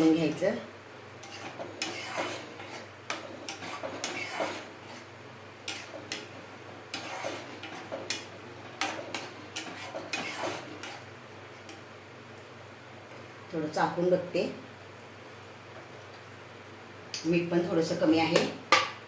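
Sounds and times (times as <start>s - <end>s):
spoon scraping and knocking pan: 1.2s - 11.1s.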